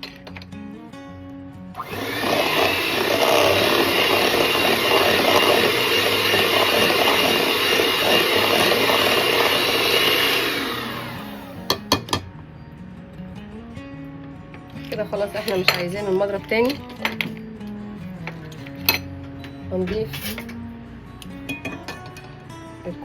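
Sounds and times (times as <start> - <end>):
electric hand mixer beating dough: 1.8 - 12.0.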